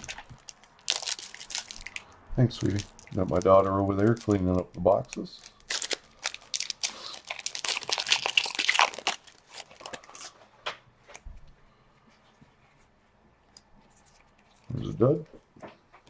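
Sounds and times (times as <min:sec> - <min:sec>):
wrapper tearing and crinkling: 0:00.0 - 0:10.4.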